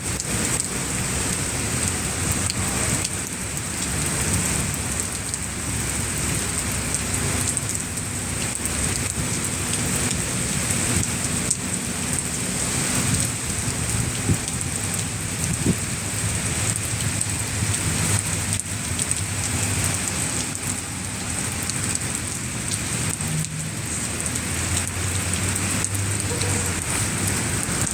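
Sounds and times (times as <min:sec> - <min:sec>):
rain pattering: 0:00.0 - 0:27.9
sharp drip ticks: 0:00.2 - 0:15.8, 0:16.6 - 0:20.8, 0:21.4 - 0:27.9.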